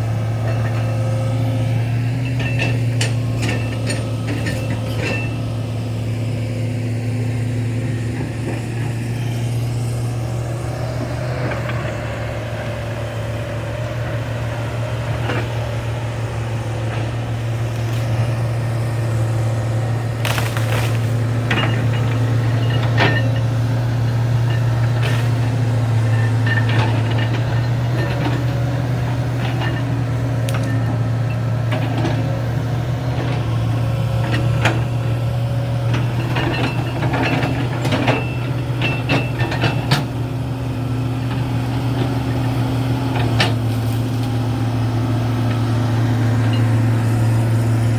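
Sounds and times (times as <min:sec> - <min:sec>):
excavator diesel engine running: 0:00.0 - 0:47.9
knocks and cracks: 0:20.2 - 0:21.5.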